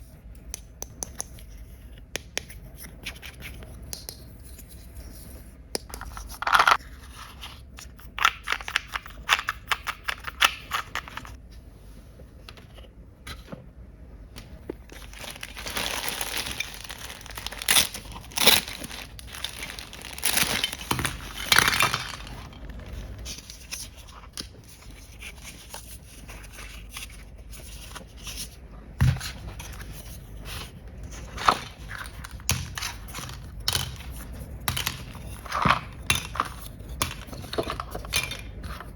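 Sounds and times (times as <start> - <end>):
plastic packaging crinkling and tearing: 14.7 - 24.0.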